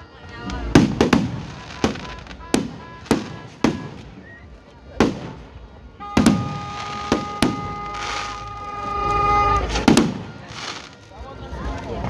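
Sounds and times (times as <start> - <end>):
fireworks bangs: 0.0 - 12.0
steady horn-like tone: 6.0 - 11.1.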